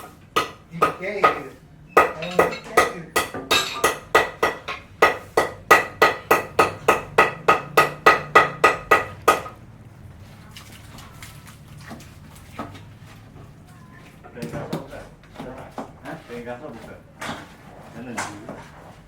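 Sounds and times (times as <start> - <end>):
hammer striking metal: 0.0 - 9.6.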